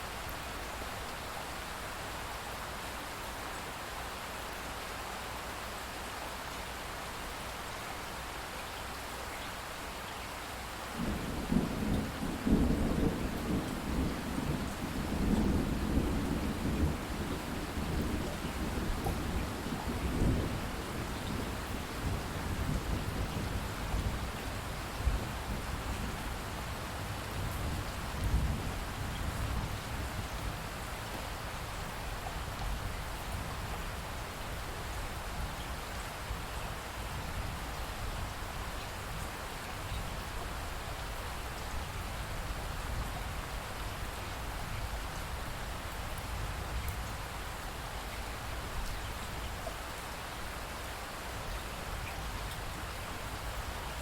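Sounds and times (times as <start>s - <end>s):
steady rain falling: 0.0s - 54.0s
low thunder rumbling: 11.0s - 30.7s.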